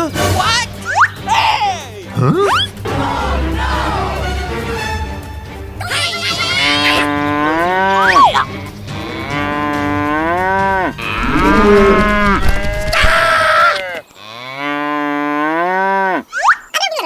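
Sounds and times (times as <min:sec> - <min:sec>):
cow mooing: 0:08.9 - 0:12.7.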